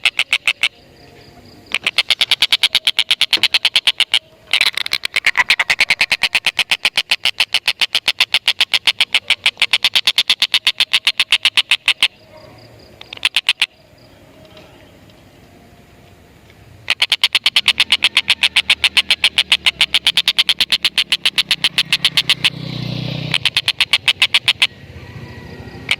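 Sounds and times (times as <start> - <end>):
kingfisher chattering call: 0.0 - 0.8, 1.7 - 12.2, 13.0 - 13.8, 16.8 - 22.6, 23.2 - 24.8.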